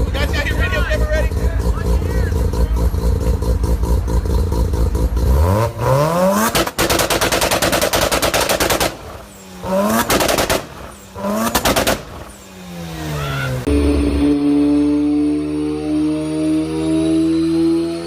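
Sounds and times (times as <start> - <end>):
rotary engine revving: 0.0 - 18.0
exhaust pops crackling: 9.8 - 12.3.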